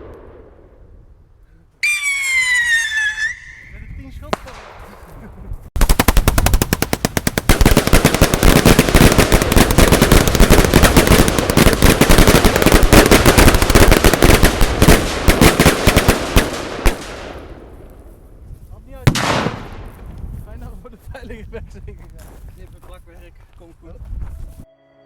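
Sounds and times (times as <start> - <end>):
firework barrage bangs: 4.2 - 17.8.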